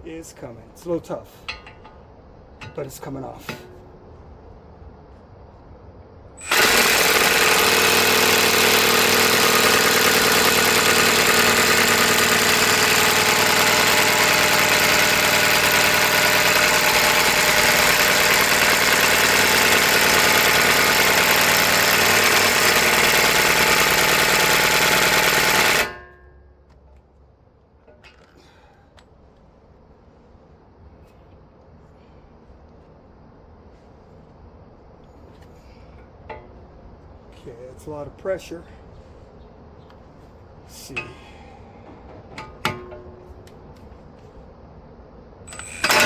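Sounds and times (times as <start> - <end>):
loud motor-driven machine: 6.4 - 26.0, 45.5 - 46.0.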